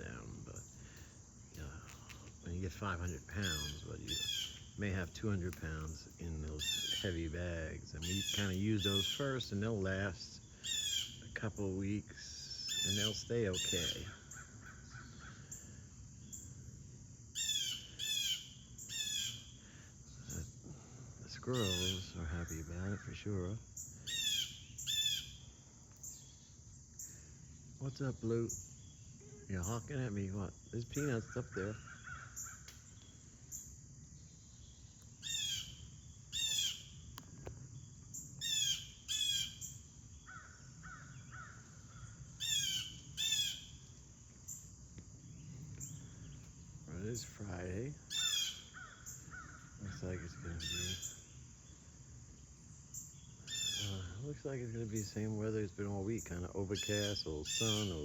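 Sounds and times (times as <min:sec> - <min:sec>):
faint small bird chirps: 0:00.0 - 0:04.9, 0:05.5 - 0:07.3, 0:08.0 - 0:09.4, 0:10.5 - 0:11.4, 0:12.2 - 0:16.6, 0:17.4 - 0:20.6, 0:21.2 - 0:47.4, 0:48.1 - 0:55.2, 0:56.2 - 0:58.0
high insect drone: 0:00.0 - 0:58.0
blue jay harsh calls: 0:02.7 - 0:05.0, 0:06.2 - 0:11.3, 0:12.2 - 0:16.5, 0:17.3 - 0:27.3, 0:30.7 - 0:33.7, 0:34.5 - 0:37.2, 0:38.1 - 0:43.9, 0:48.0 - 0:51.7, 0:52.9 - 0:54.2, 0:56.2 - 0:58.0.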